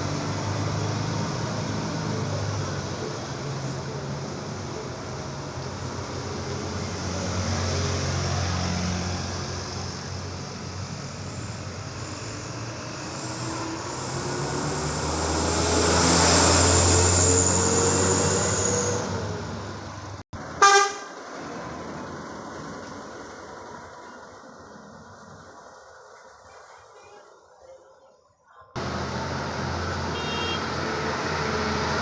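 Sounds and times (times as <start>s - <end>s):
tyres hissing on wet road: 0.0s - 19.4s
truck engine hum: 0.0s - 26.5s, 28.8s - 32.0s
vehicle horn toot: 20.6s - 21.2s, 30.1s - 30.8s.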